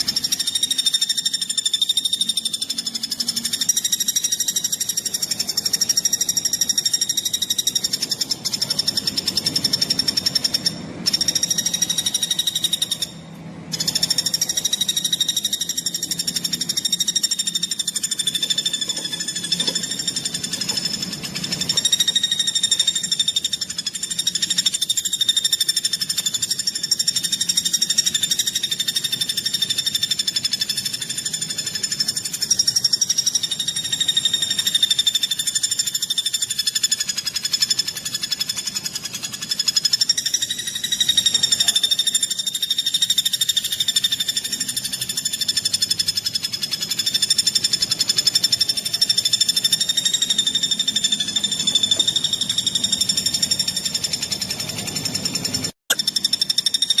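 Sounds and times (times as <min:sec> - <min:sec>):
songbird trilling: 0:00.0 - 0:57.0.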